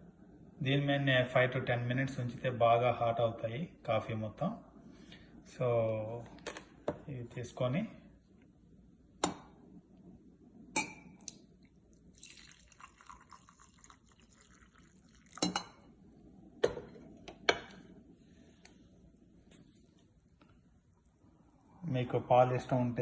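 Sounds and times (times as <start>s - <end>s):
glass carafe and cups clinking: 10.8s - 11.4s, 12.2s - 15.9s
coffee being poured: 11.2s - 16.0s.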